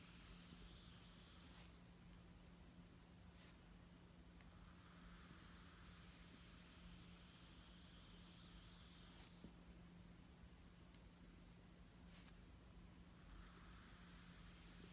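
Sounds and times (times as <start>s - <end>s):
high-pitched electronic buzz: 0.0s - 1.8s, 4.0s - 9.4s, 12.7s - 14.9s.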